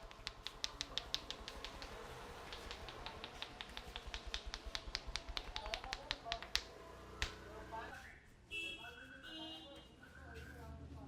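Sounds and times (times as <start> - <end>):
hands tapping in rhythm: 0.0 - 7.4.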